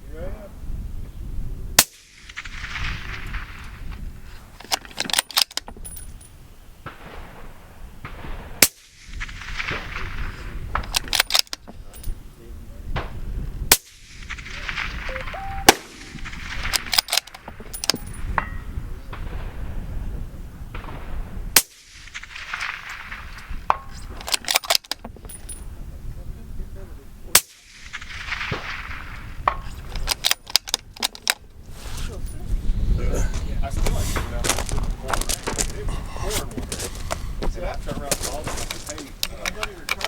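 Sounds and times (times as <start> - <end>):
suppressed rifle shots: 13.7 - 18.6
sharp clicks and knocks: 16.7 - 18.2, 23.7 - 25.6.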